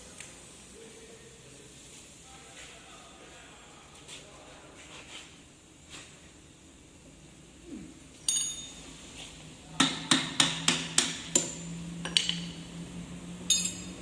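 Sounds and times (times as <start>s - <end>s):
hammer striking metal: 9.8s - 12.6s, 13.5s - 14.0s.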